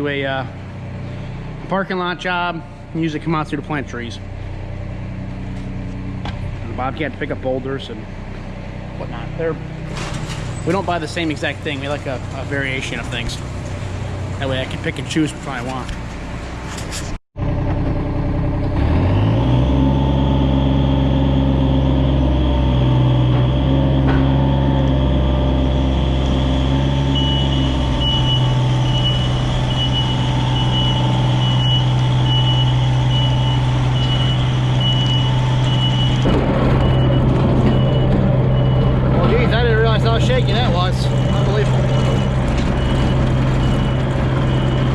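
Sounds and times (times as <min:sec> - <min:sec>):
excavator diesel engine revving: 0:00.0 - 0:44.9
travel alarm beeping: 0:22.0 - 0:44.9.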